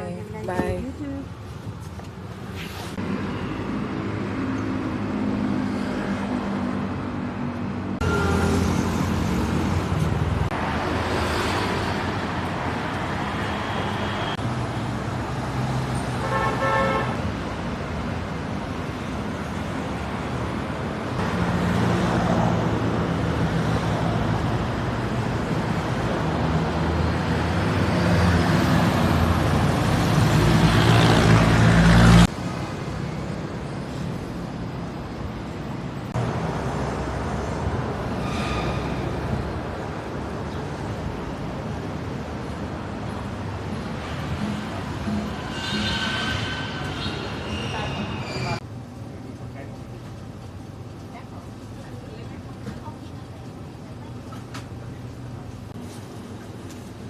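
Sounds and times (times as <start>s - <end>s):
vehicle engines and road noise: 0.0s - 57.0s
car horn toot: 16.2s - 17.2s.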